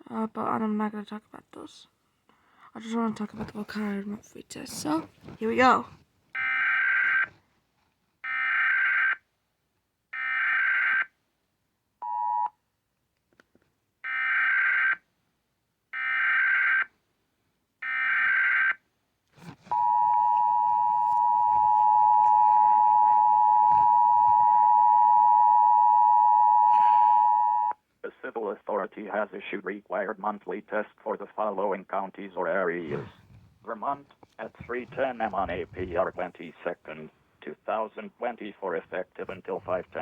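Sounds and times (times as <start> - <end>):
two-tone attention signal: 19.8 - 27.7.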